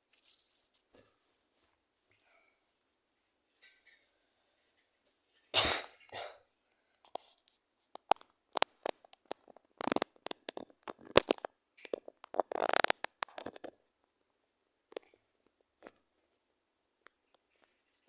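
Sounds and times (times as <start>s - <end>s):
person coughing: 5.5s - 6.5s.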